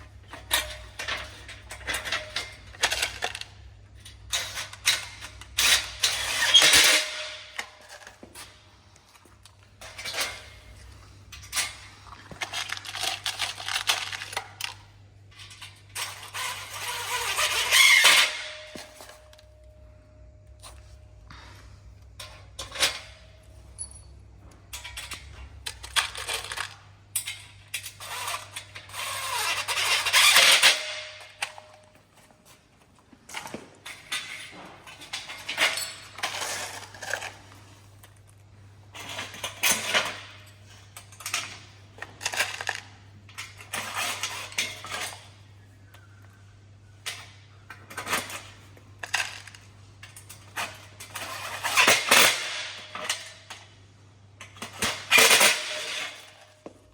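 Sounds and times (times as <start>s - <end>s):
metal bolts and nuts clinking: 22.2s - 31.8s.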